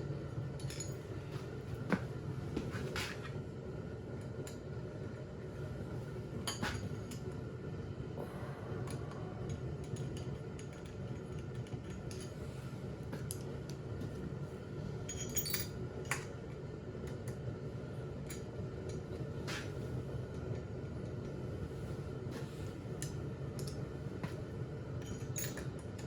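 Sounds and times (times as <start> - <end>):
steady low hum: 0.0 - 26.0
metal parts and tools clinking: 15.1 - 15.7.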